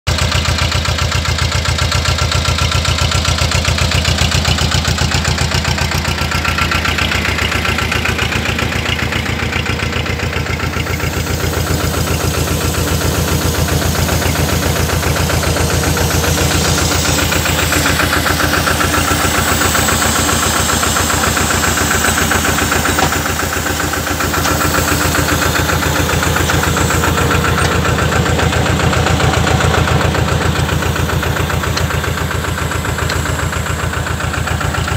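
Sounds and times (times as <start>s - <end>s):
diesel tractor engine running: 0.0s - 34.9s.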